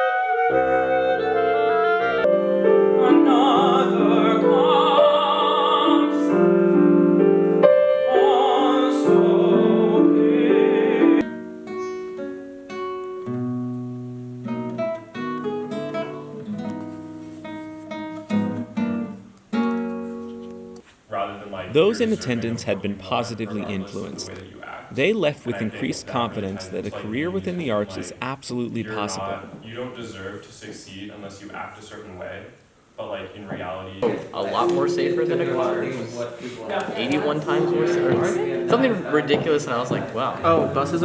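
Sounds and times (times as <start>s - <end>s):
piano chords: 0.0s - 16.6s, 34.0s - 41.0s
person singing with vibrato: 2.6s - 6.7s, 7.8s - 11.2s.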